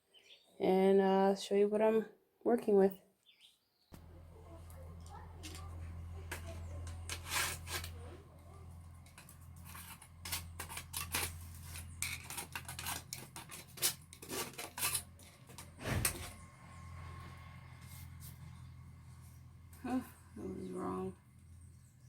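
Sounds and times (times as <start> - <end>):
tape being peeled off: 6.3 - 8.0.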